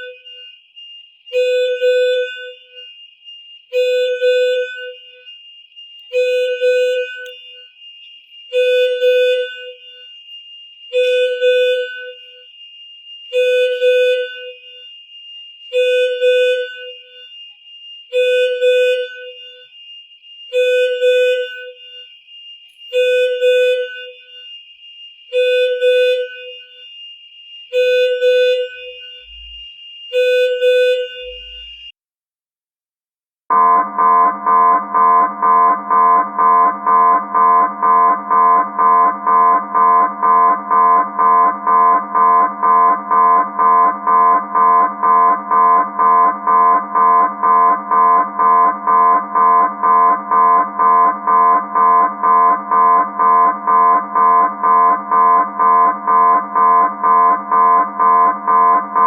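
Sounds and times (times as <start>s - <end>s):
continuous high-pitched tone: 0.0s - 32.0s
electronic alarm horn tone: 0.0s - 32.0s, 33.5s - 59.0s.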